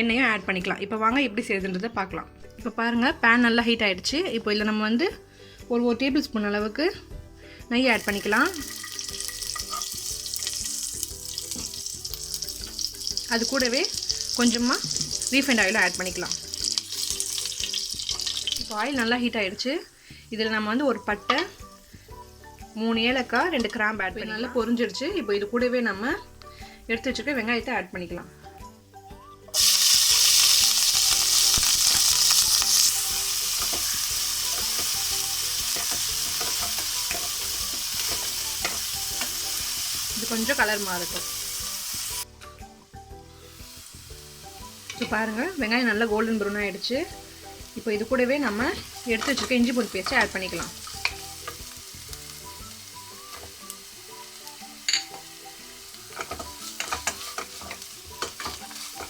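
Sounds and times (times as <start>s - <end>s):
onions sizzling in hot oil: 7.8s - 28.1s, 28.8s - 59.0s
stirring scrapes against a pan: 56.1s - 59.0s.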